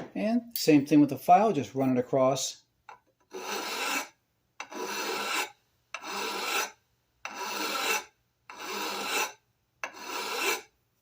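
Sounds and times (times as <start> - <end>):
file rasping on cast iron: 3.3 - 10.7.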